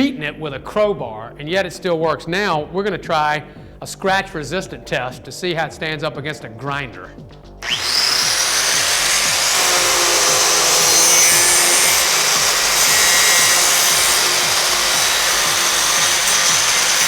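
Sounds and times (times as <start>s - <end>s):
power grinder grinding: 7.6s - 17.0s.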